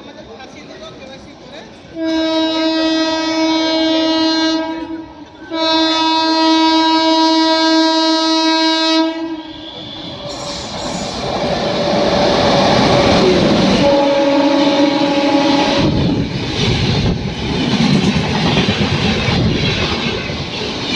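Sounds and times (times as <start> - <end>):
train rumble and track noise: 0.0 - 20.9
locomotive air horn blasts: 2.0 - 10.8, 13.7 - 16.0.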